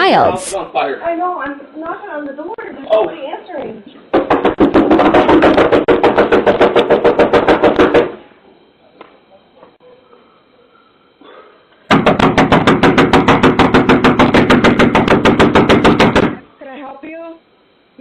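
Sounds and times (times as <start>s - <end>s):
rapid knocking on door: 4.1s - 8.2s, 11.9s - 16.4s.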